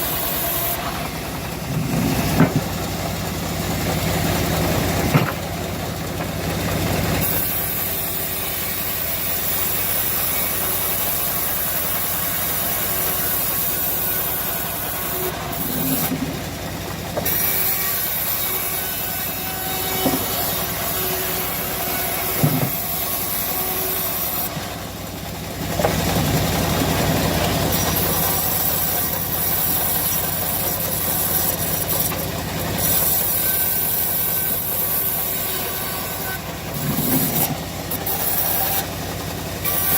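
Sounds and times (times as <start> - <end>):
bandsaw mill engine drone: 0.0 - 39.9
saw blade hissing through wood: 7.2 - 16.3, 17.2 - 24.6.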